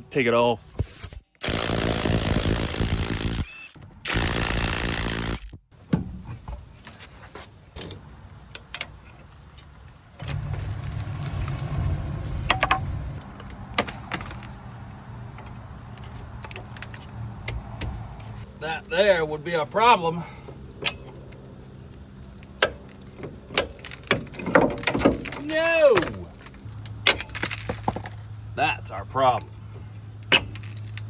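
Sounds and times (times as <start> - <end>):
impact wrench bursts: 1.4 - 5.6
metal clinks and knocks: 7.8 - 14.6.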